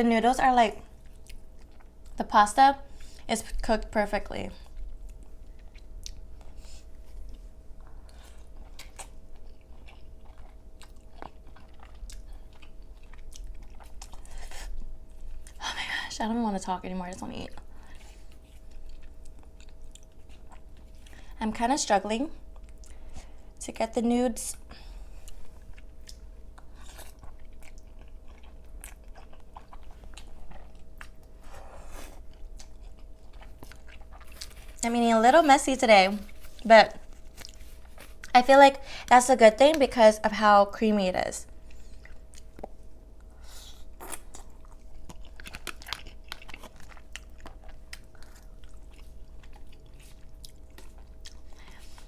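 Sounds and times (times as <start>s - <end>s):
person chewing food: 0.9s - 2.2s, 4.6s - 15.6s, 17.5s - 21.4s, 22.4s - 23.5s, 24.7s - 38.4s, 41.5s - 52.0s.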